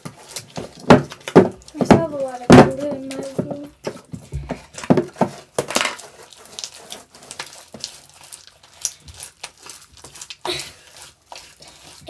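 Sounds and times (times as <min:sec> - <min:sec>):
hands squishing slime: 0:00.0 - 0:12.0.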